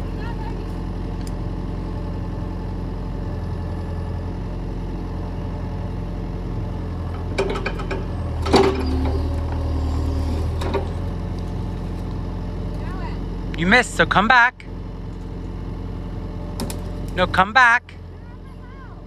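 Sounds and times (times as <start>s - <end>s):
excavator engine running: 0.0s - 19.0s
metal clanks and knock: 7.2s - 9.7s, 10.4s - 11.1s.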